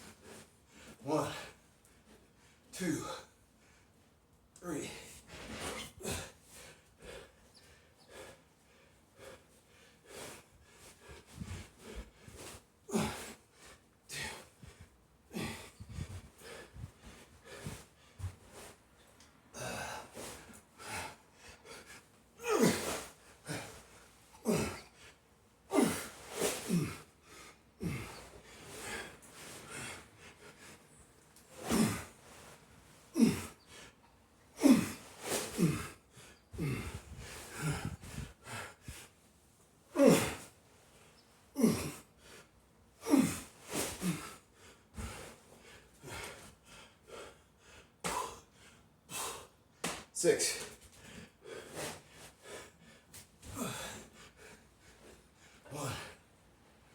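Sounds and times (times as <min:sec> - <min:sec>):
man breathing hard and grunting: 0:14.1 - 0:14.6, 0:15.3 - 0:17.8, 0:19.6 - 0:30.8, 0:31.6 - 0:32.2, 0:33.1 - 0:33.9, 0:34.6 - 0:38.8, 0:41.6 - 0:42.1, 0:53.5 - 0:54.6, 0:55.5 - 0:56.2.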